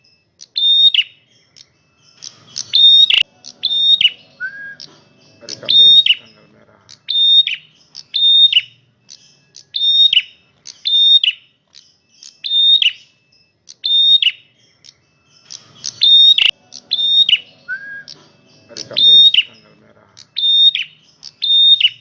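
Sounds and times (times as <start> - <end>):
bird whistled call: 0.0 - 6.3, 7.0 - 19.6, 20.2 - 22.0.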